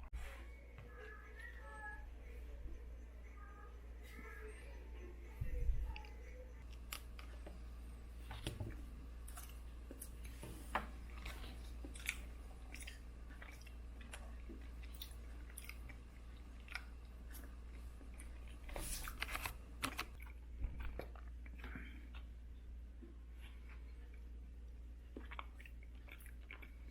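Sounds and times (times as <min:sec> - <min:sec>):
person chewing food: 0:06.0 - 0:26.9.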